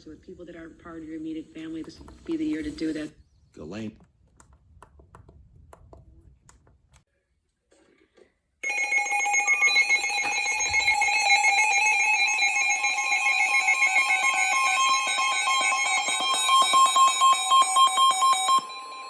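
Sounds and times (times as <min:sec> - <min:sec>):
fluttering emergency alarm tone: 0:08.6 - 0:19.0.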